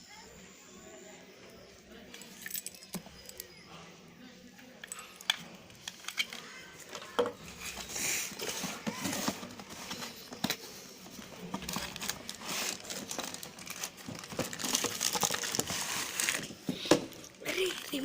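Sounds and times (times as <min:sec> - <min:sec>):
packaging crinkling and rustling: 0:07.4 - 0:18.0.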